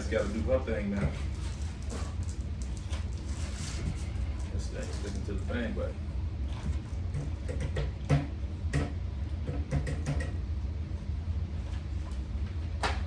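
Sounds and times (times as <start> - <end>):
steady low hum: 0.0 - 13.0
table parts knocking and clicking: 7.2 - 8.9, 9.5 - 10.4.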